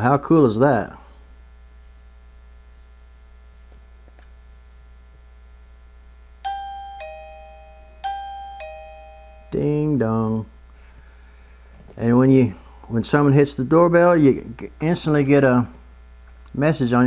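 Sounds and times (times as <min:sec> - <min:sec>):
faint low hum: 0:00.0 - 0:17.0
doorbell ding-dong chime: 0:06.4 - 0:10.0.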